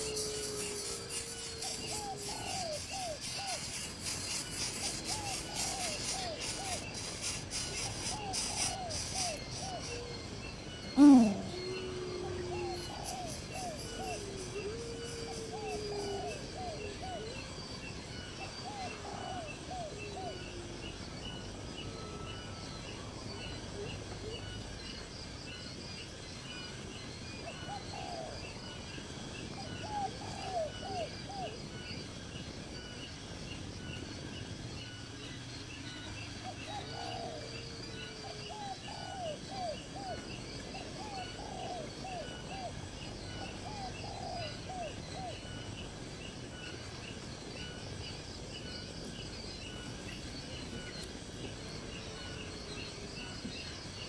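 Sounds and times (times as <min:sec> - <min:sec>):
steady high chirping: 0:00.0 - 0:18.8
birds low falling notes: 0:03.8 - 0:16.2.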